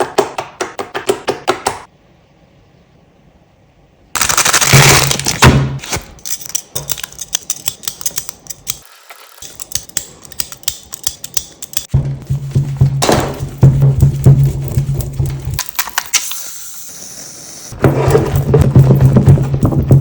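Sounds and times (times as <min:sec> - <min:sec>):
crunchy slime crackling and popping: 0:04.2 - 0:05.6.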